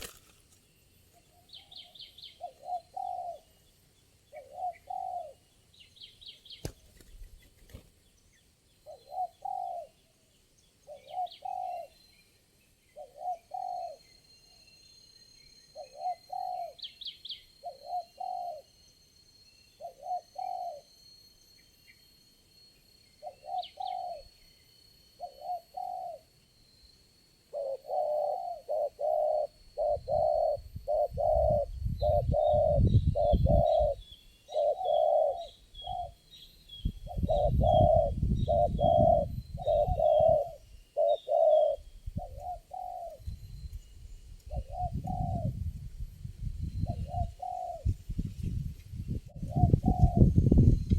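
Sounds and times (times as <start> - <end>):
small birds chirping: 0.0 - 18.7, 22.7 - 45.6
dove cooing: 1.3 - 3.6, 4.3 - 5.4, 8.8 - 10.0, 10.8 - 12.0, 13.0 - 14.1, 15.7 - 16.9, 17.6 - 18.8, 19.8 - 20.9, 23.2 - 24.4, 25.2 - 26.4, 27.5 - 36.2, 37.0 - 43.4, 44.5 - 45.6, 46.8 - 48.0, 49.3 - 50.4.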